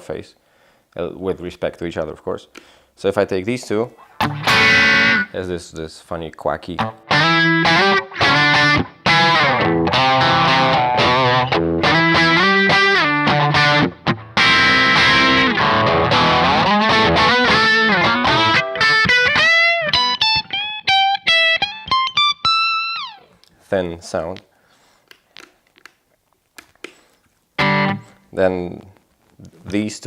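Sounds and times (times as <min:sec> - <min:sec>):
electric guitar with quacky tone: 0:04.0 - 0:05.4, 0:06.7 - 0:23.5, 0:27.6 - 0:28.3.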